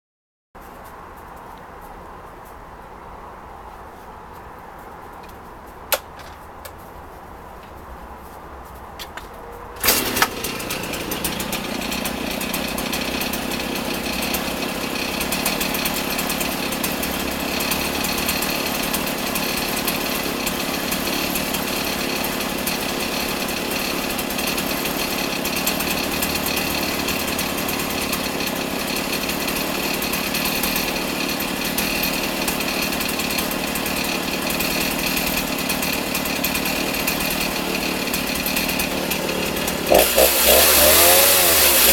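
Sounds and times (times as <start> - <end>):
small knocks: 5.1 - 6.9
chainsaw starting and running: 9.8 - 41.9.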